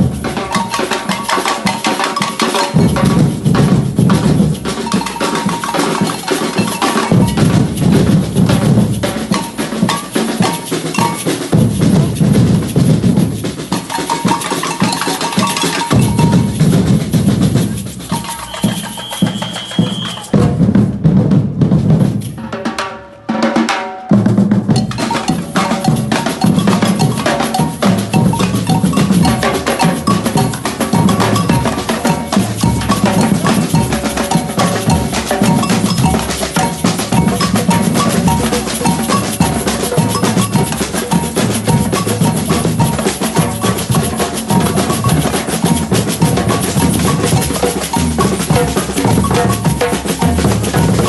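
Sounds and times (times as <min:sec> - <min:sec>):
samba drum ensemble: 0:00.0 - 0:51.0
steady high tone: 0:24.8 - 0:43.8.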